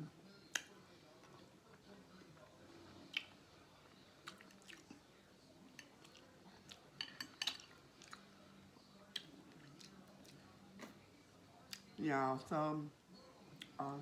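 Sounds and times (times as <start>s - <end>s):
mouth chewing food: 2.8s - 5.1s, 5.7s - 8.3s, 9.0s - 11.0s.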